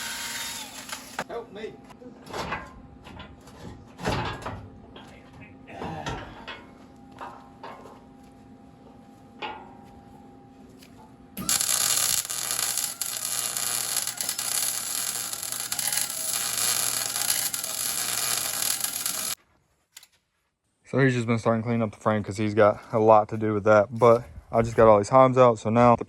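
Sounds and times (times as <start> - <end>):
welding arc crackling and hissing: 0.0 - 1.2, 11.4 - 19.4
low electrical hum: 0.0 - 19.4.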